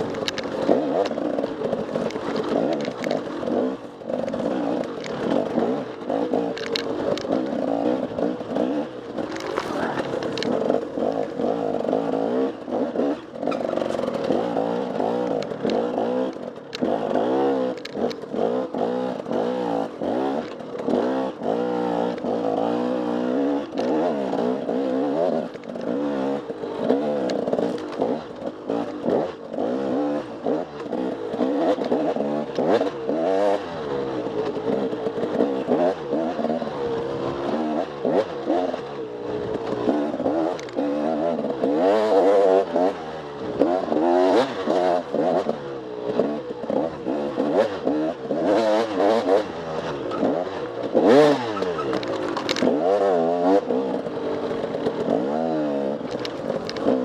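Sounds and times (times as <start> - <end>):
sharp clicks and knocks: 0.0 - 12.0, 13.4 - 19.4, 39.4 - 57.0
motorcycle engine revving: 0.0 - 57.0.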